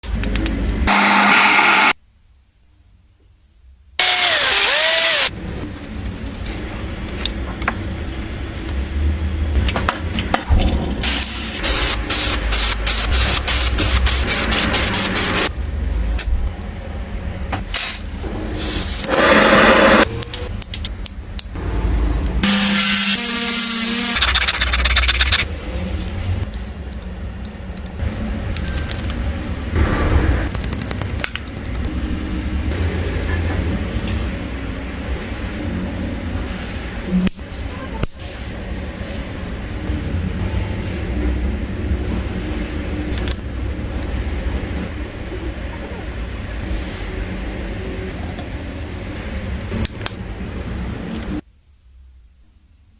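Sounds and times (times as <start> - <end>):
power tools: 0.9 - 2.0, 4.0 - 5.3, 22.4 - 24.4.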